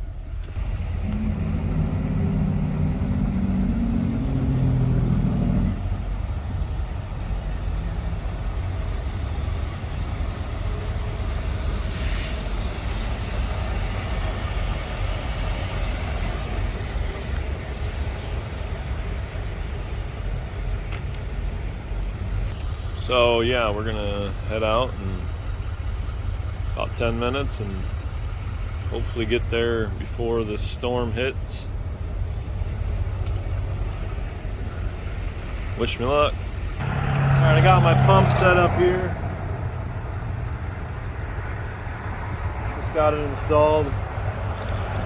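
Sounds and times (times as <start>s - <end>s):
pitched engine drone: 0.0s - 12.3s, 22.5s - 31.5s, 33.8s - 43.8s
truck low rumble: 0.0s - 45.0s.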